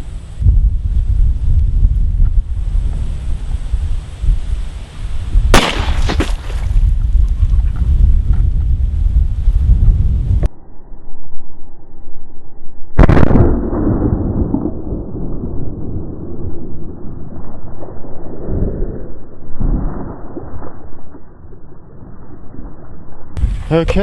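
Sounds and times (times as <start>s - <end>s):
loud rough rumbling: 0.0s - 4.5s
pistol shot: 5.5s - 6.7s, 13.0s - 14.0s.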